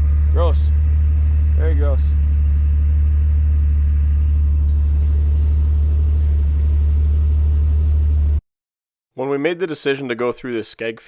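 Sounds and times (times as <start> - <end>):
car engine running steadily: 0.0 - 8.4.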